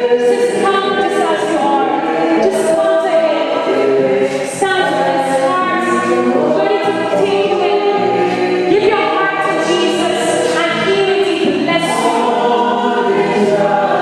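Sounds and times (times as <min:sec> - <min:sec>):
choir singing a hymn: 0:00.0 - 0:14.0.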